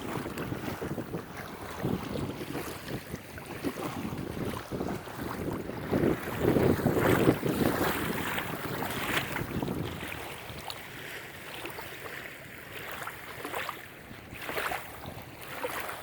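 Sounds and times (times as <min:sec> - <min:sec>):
wind on microphone: 0:00.0 - 0:11.9, 0:12.9 - 0:16.0
waves washing onto beach: 0:00.0 - 0:16.0.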